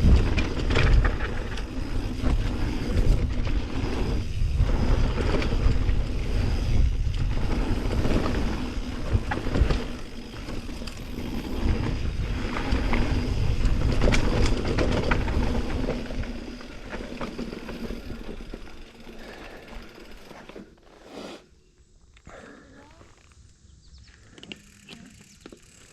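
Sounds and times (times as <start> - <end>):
wind buffeting microphone: 0.0 - 16.4
bike clacks and rattles: 0.0 - 20.8, 24.3 - 25.9
bike rumbling on trail: 0.0 - 21.3, 23.1 - 25.9.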